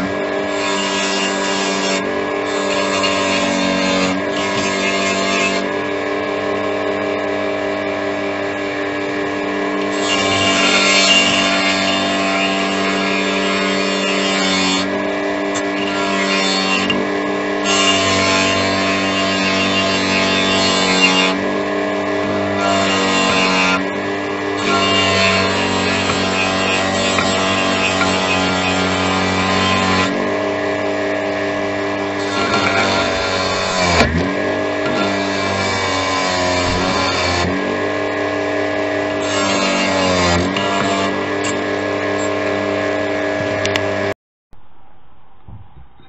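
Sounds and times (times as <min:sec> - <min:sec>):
power tool motor running: 0:00.0 - 0:43.8
grinding against metal: 0:09.7 - 0:30.3, 0:31.6 - 0:37.7.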